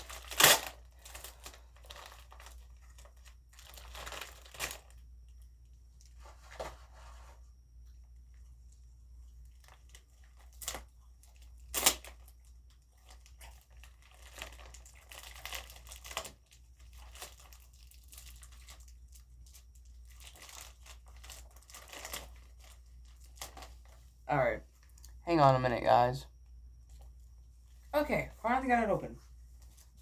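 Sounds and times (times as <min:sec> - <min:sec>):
plastic mailer crinkling and tearing: 0:00.0 - 0:05.0, 0:09.5 - 0:24.1.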